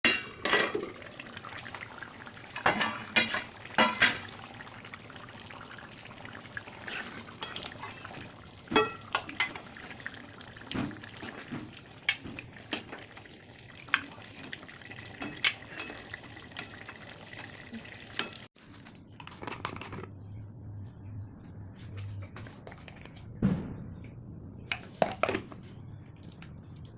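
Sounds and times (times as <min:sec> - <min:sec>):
food hissing in a pot: 0:00.9 - 0:08.7
metal spoon clinking on a pot: 0:08.8 - 0:09.6.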